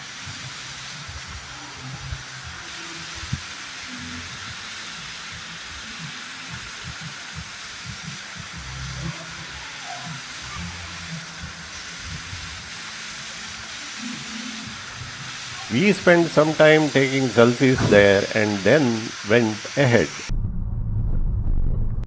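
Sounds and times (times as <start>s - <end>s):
waterfall rushing: 0.0s - 20.3s
low rumbles: 20.3s - 22.0s.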